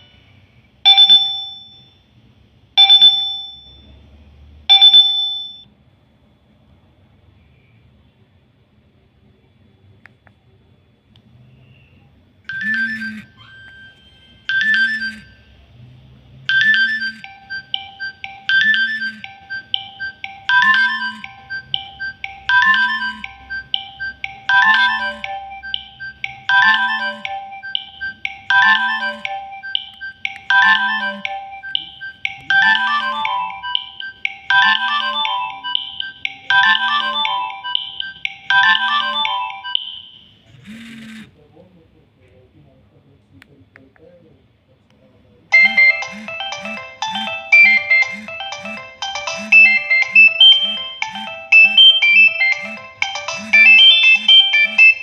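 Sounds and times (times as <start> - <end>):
mobile phone ringtone: 0.0 - 0.2, 0.8 - 2.1, 2.8 - 4.0, 4.7 - 5.7, 12.5 - 15.6, 16.5 - 41.3, 45.5 - 55.0.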